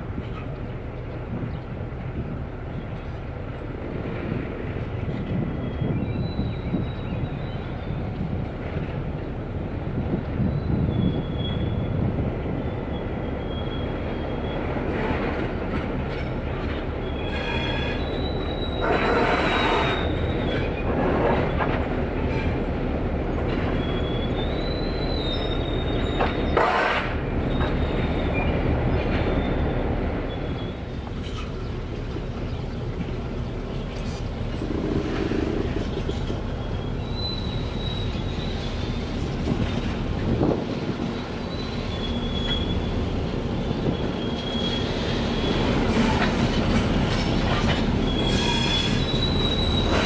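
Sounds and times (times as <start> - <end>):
wheel flanges squealing: 17.0 - 21.0, 36.2 - 39.0, 41.1 - 43.0, 43.6 - 46.6, 47.2 - 50.0
train wheels clattering: 43.8 - 50.0.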